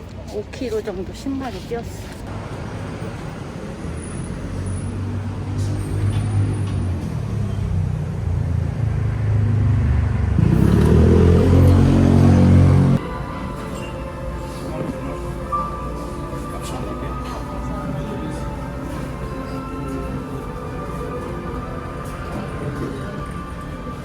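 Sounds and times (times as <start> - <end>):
vehicle engine accelerating: 2.3 - 13.0.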